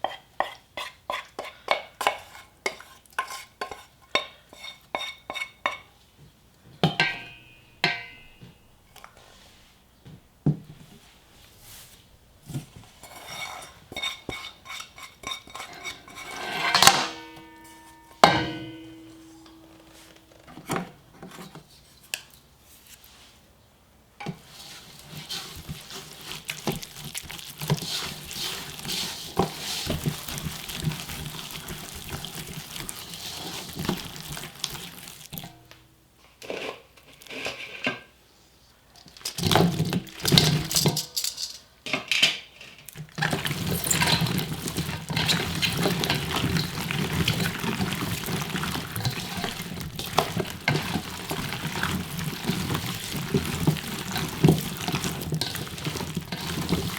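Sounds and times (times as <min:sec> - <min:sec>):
dishes and utensils clinking: 0:06.8 - 0:08.6, 0:13.0 - 0:20.4, 0:39.2 - 0:56.9
ringing clang: 0:07.0 - 0:08.4.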